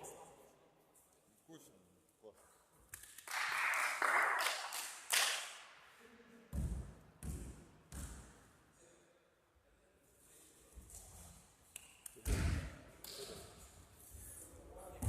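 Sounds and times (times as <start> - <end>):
basketball bouncing on floor: 6.5 - 8.3.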